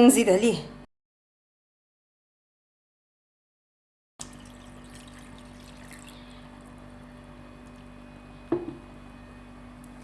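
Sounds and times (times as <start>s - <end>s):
water pouring into a pot: 4.2s - 8.0s.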